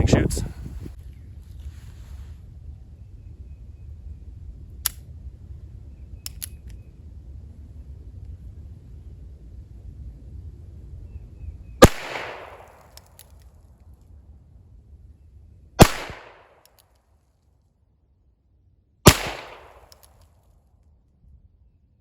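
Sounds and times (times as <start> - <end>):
revolver shots: 11.8 - 12.8, 19.1 - 19.9.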